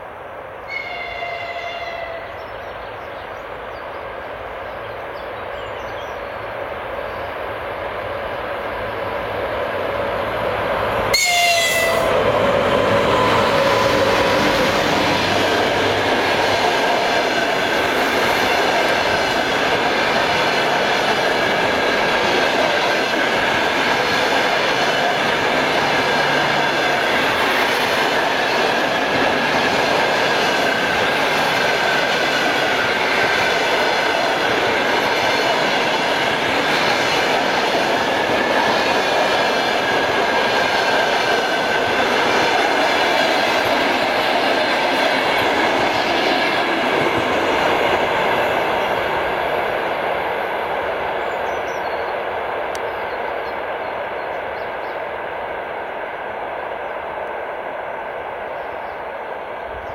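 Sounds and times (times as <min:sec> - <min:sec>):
train rail noise: 0:00.0 - 0:59.9.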